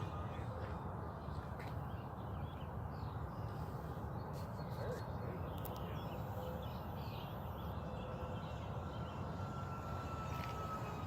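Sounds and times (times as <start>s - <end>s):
distant electric motor whine: 6.0s - 11.0s.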